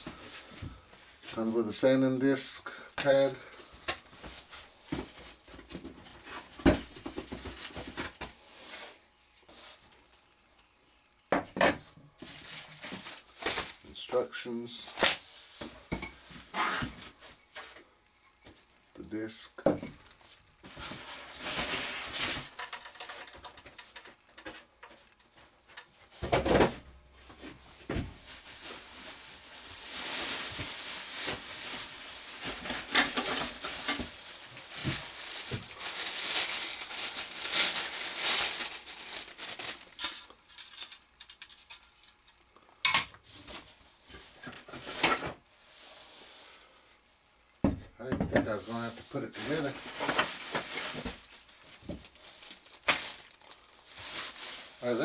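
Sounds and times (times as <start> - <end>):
packing material rustling: 12.2 - 14.1, 20.8 - 23.4, 28.2 - 42.2, 48.6 - 55.0.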